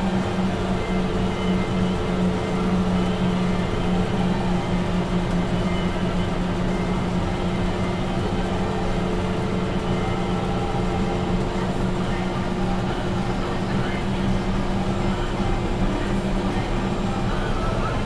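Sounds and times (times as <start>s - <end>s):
bulldozer diesel engine: 0.0s - 18.0s.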